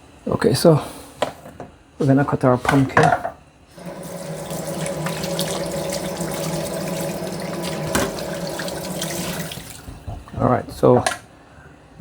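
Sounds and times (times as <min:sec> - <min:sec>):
tap running into sink: 0:03.8 - 0:10.4.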